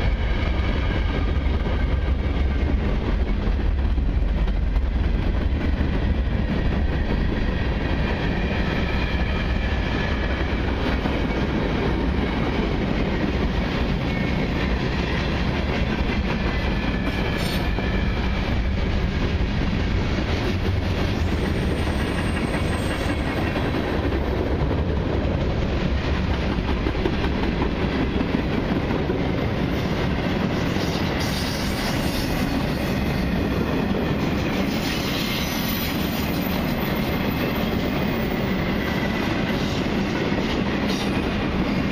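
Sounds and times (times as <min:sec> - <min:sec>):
clickety-clack over rail joints: 0:00.0 - 0:41.9
train wheels rumbling on rails: 0:00.0 - 0:41.9
high wheel squeal: 0:34.6 - 0:37.2.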